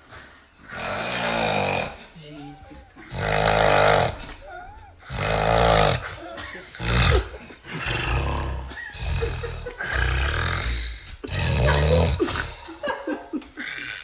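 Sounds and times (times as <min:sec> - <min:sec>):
person snoring loudly: 0:00.6 - 0:02.2, 0:03.0 - 0:12.6, 0:13.6 - 0:14.0.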